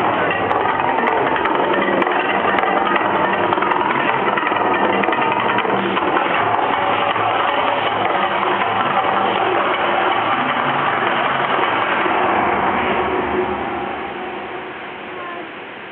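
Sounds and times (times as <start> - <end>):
fountain roar and rumble: 0.0 - 15.9.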